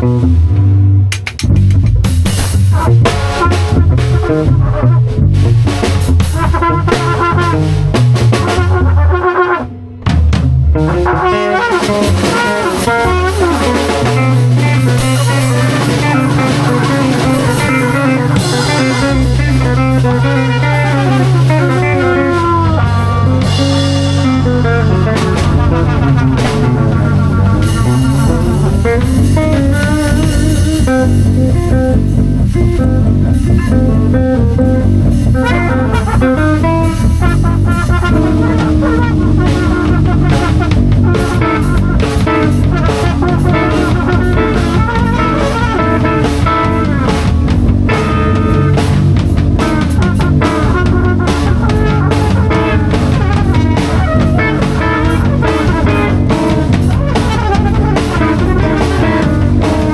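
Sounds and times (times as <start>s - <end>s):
bass guitar: 0.0s - 59.9s
drum kit: 0.0s - 59.9s
electric guitar: 0.0s - 59.9s.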